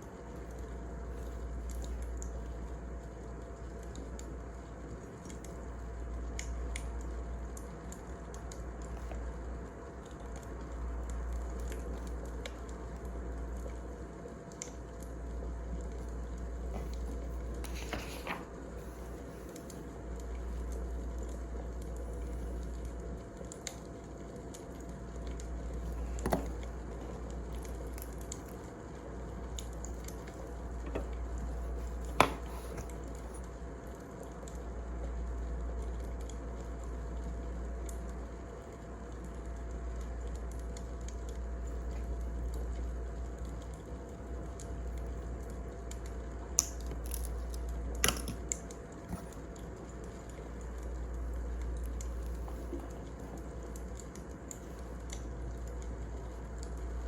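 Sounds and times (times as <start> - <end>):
wood popping: 30.7 - 33.0.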